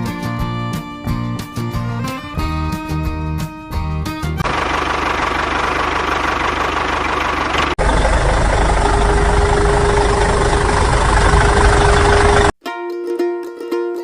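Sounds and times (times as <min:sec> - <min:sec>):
engine running: 0:00.4 - 0:12.6
deep engine rumble: 0:04.1 - 0:12.6.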